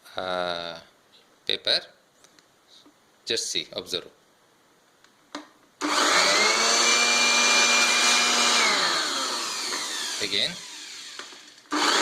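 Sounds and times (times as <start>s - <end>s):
electric blower motor whining: 5.8s - 12.0s.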